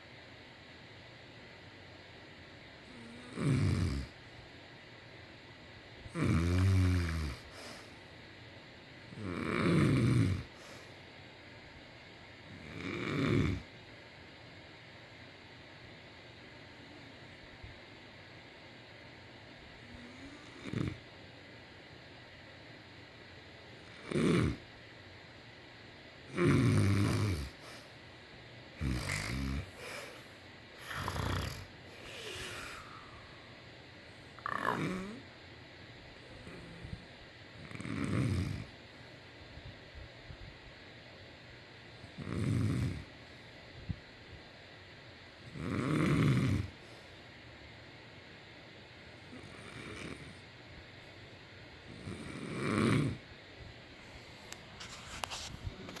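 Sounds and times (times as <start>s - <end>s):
person snoring: 2.9s - 4.1s, 6.1s - 7.8s, 9.2s - 10.8s, 12.6s - 13.7s, 20.0s - 21.0s, 23.9s - 24.6s, 26.3s - 27.8s, 28.8s - 30.2s, 30.8s - 33.4s, 34.4s - 35.2s, 37.6s - 38.7s, 42.2s - 43.1s, 45.5s - 46.8s, 51.9s - 53.2s
soft breaths: 6.6s - 8.6s, 10.4s - 11.2s, 27.4s - 35.4s, 36.0s - 37.8s, 46.6s - 47.7s, 49.0s - 56.0s.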